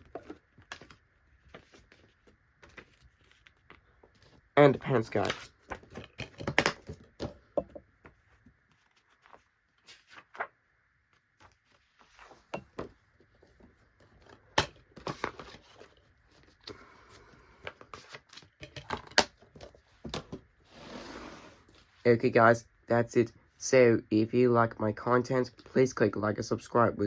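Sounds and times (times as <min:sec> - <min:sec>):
paper rustling: 0:00.0 - 0:07.3, 0:08.0 - 0:12.5.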